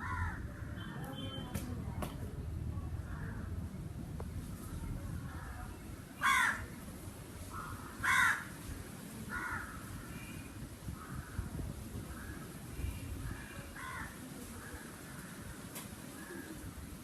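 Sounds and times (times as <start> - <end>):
crows cawing: 0.0 - 0.4, 6.2 - 6.7, 7.5 - 8.6, 9.3 - 10.2, 13.3 - 14.8.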